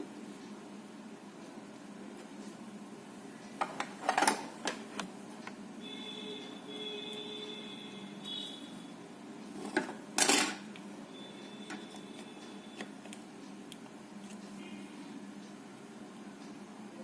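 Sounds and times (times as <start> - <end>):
tools clattering: 9.7 - 10.6.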